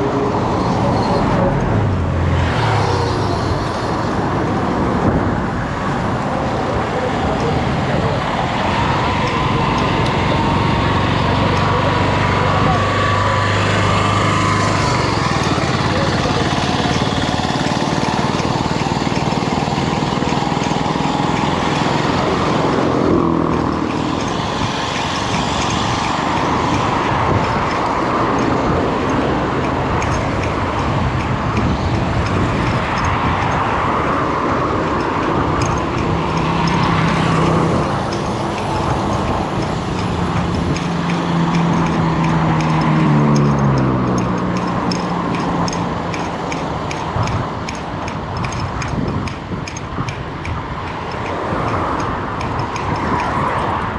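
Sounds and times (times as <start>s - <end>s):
people's voices: 0.0s - 31.5s
road noise: 0.0s - 53.9s
vehicle engines running: 0.0s - 53.9s.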